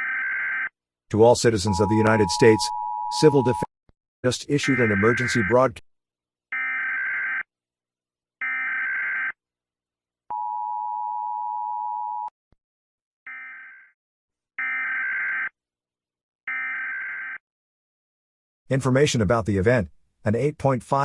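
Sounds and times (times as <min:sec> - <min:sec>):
steady attention tone: 0:01.2 - 0:03.7.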